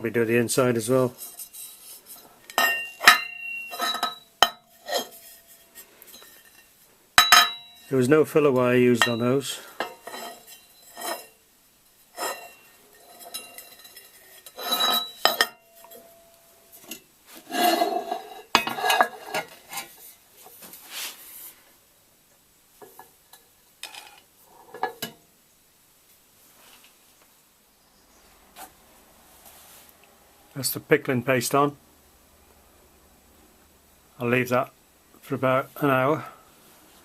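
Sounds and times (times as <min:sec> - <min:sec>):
scraping on metal pipe: 0:01.0 - 0:08.0, 0:09.0 - 0:20.1
metallic clinks: 0:02.5 - 0:07.9, 0:12.2 - 0:17.0.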